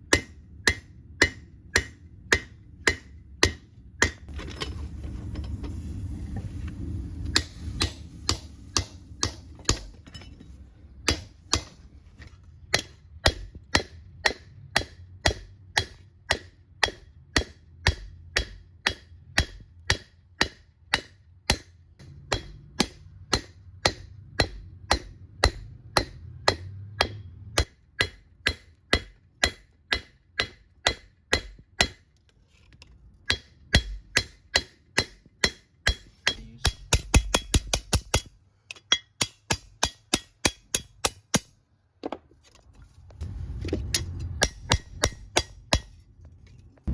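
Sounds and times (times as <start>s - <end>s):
hammer striking steel on anvil: 0.0s - 4.3s, 7.3s - 10.4s, 11.0s - 11.8s, 12.7s - 32.0s, 33.2s - 41.5s, 43.9s - 46.0s
low rumble: 4.3s - 11.0s, 43.1s - 45.3s, 46.6s - 46.9s.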